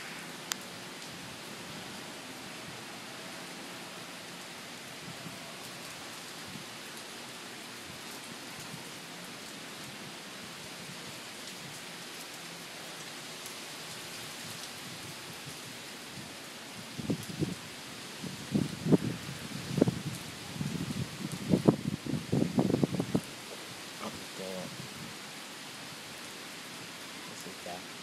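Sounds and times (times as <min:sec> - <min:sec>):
heavy rain hissing: 0:00.0 - 0:28.0
raindrop ticks: 0:00.5 - 0:01.1.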